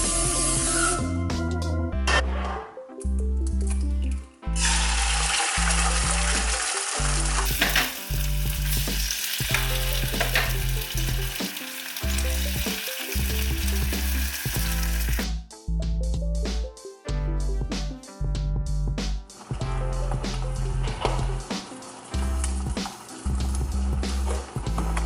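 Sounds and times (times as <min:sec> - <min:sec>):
background music with bass line: 0:00.0 - 0:25.0
food sizzling in a frying pan: 0:04.6 - 0:15.2.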